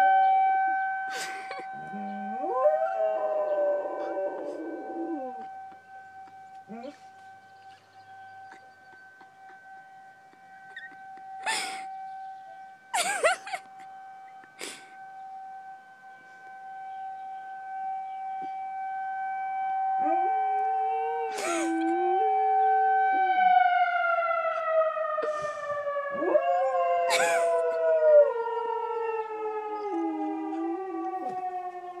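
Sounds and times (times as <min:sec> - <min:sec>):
tornado siren winding down: 0:00.0 - 0:32.0
dog howling: 0:01.4 - 0:05.6, 0:06.7 - 0:07.0, 0:21.1 - 0:23.2, 0:26.1 - 0:29.2.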